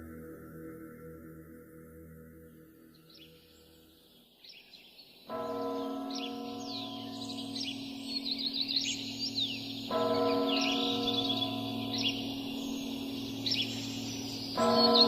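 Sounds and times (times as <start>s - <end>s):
birds chirping: 4.5s - 15.0s
church bell ringing: 5.3s - 15.0s.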